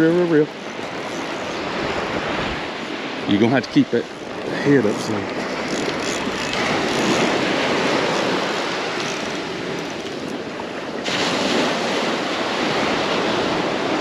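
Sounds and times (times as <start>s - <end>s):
wind buffeting microphone: 0.0s - 14.0s
surf breaking on beach: 6.6s - 14.0s.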